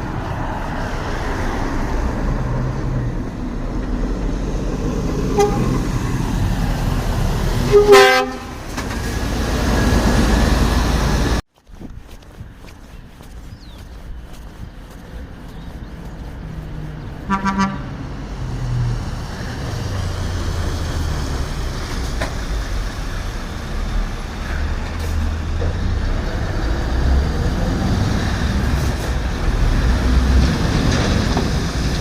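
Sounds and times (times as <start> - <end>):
truck diesel engine passing: 0.0 - 11.4, 12.8 - 32.0
truck horn toot: 5.3 - 5.8, 7.6 - 8.7, 17.3 - 18.1.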